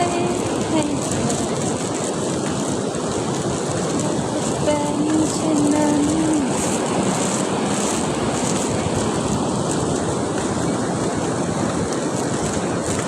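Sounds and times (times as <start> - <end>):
surf washing onto beach: 0.0 - 13.0
wind buffeting microphone: 0.0 - 13.0.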